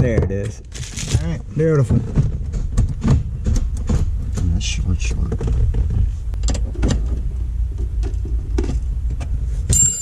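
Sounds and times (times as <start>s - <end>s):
gear shifter clicks and clunks: 0.0s - 7.3s
low steady rumble: 0.0s - 10.0s.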